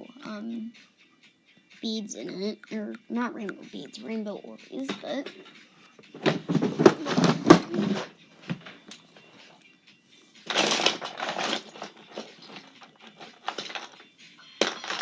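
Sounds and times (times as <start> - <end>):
plastic toys rustling and rattling: 4.8 - 5.6, 6.2 - 9.5, 10.5 - 15.0.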